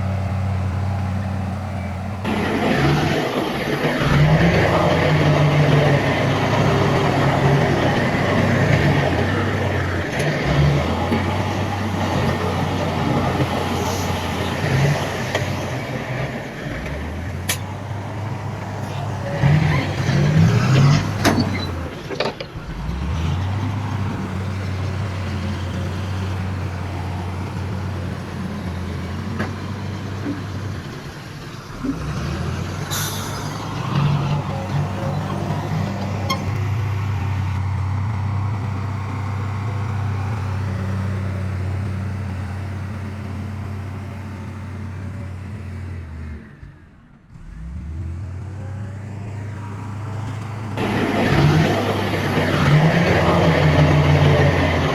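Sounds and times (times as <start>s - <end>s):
heavy diesel machinery running: 0.0s - 54.9s.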